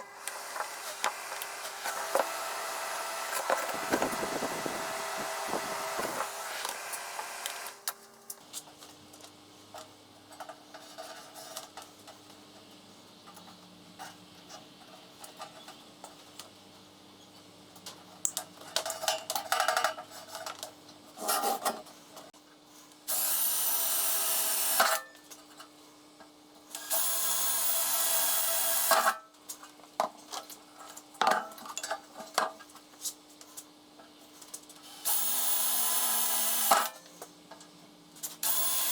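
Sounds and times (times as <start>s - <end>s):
power tool running: 0.0s - 7.9s, 35.0s - 36.9s, 38.4s - 38.9s.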